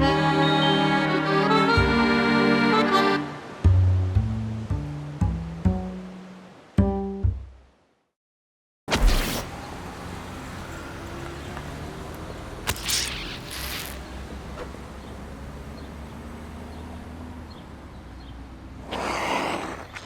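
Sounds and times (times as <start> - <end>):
short hissy noises: 8.9 - 9.6, 12.7 - 14.2.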